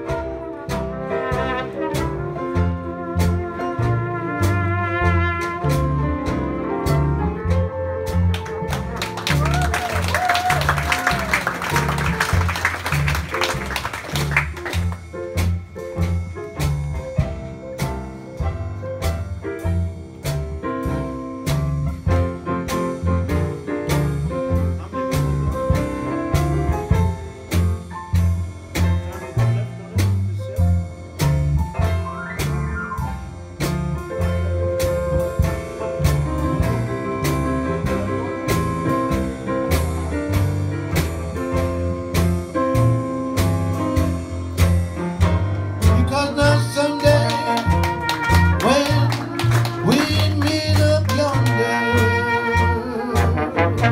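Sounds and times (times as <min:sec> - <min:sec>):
trombone: 0:00.0 - 0:17.2, 0:31.2 - 0:53.9
drums: 0:00.0 - 0:53.9
jazz band playing: 0:00.0 - 0:53.9
piano: 0:00.0 - 0:53.9
clarinet: 0:00.1 - 0:06.5, 0:46.0 - 0:50.3.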